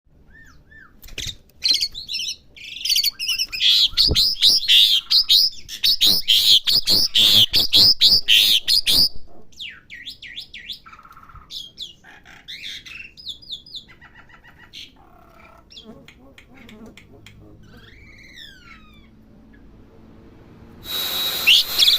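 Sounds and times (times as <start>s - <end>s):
bird whistles and chirps: 0.2s - 13.9s, 20.8s - 21.9s.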